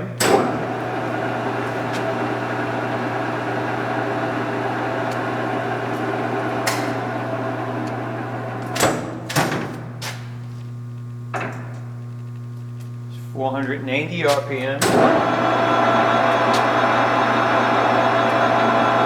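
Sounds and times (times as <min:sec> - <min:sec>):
lathe gears whirring: 0:00.2 - 0:08.8, 0:14.8 - 0:19.0
lathe clunks: 0:00.2 - 0:10.1, 0:14.8 - 0:19.0
lathe motor hum: 0:00.3 - 0:08.8, 0:14.8 - 0:19.0.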